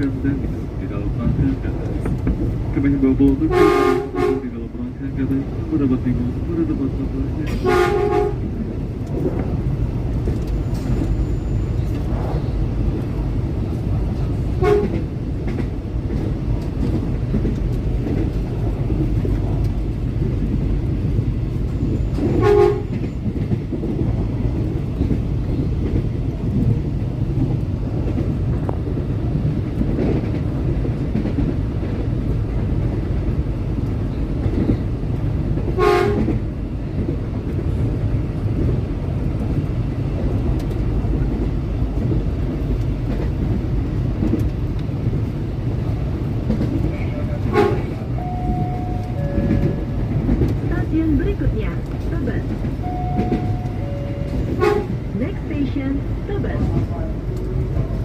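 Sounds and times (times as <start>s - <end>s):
electric train rumbling: 0.0s - 58.0s
train horn blasts: 3.5s - 4.5s, 7.5s - 8.5s, 14.6s - 15.0s, 22.3s - 23.1s, 35.8s - 36.4s, 47.5s - 50.0s, 52.8s - 55.0s.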